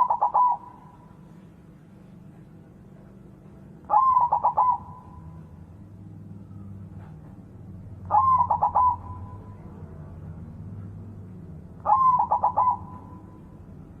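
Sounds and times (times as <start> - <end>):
dove cooing: 0.0 - 1.4, 3.9 - 5.6, 8.0 - 9.8, 11.8 - 13.7.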